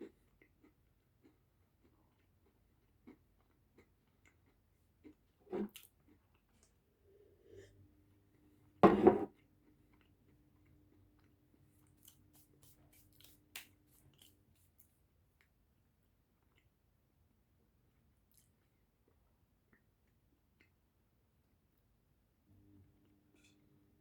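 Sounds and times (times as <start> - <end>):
person chewing: 11.2 - 14.9.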